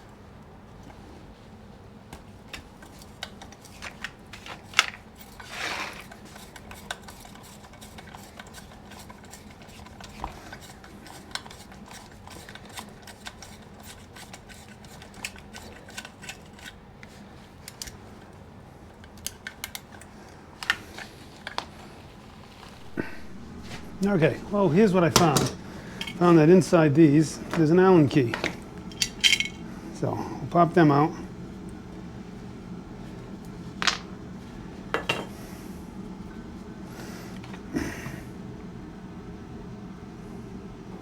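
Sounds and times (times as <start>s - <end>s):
faint steady hum: 14.8s - 41.0s
hand tools clicking on metal: 28.3s - 29.6s.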